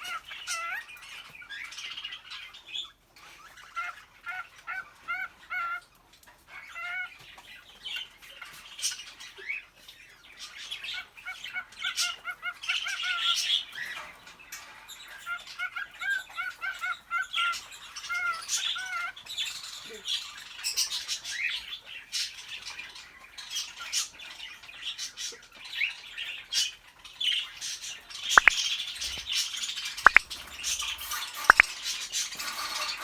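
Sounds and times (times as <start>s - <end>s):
light clicks and taps: 28.4s - 28.6s, 30.1s - 30.5s, 31.5s - 31.7s
sharp loud bird calls: 28.4s - 29.3s, 30.1s - 31.8s
birds chirping: 28.4s - 31.8s.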